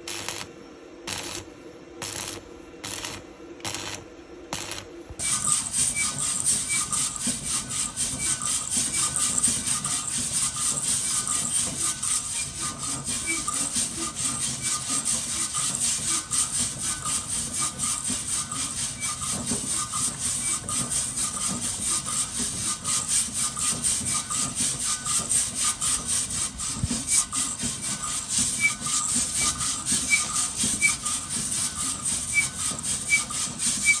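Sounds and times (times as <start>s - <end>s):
coffee beans scraping in pan: 5.2s - 22.3s, 25.2s - 34.0s.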